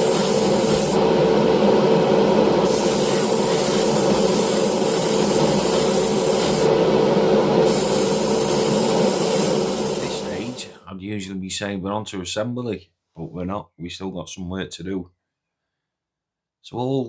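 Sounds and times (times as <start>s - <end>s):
spray gun hissing: 0.0s - 1.4s, 2.6s - 10.8s
steady hum: 0.0s - 10.8s.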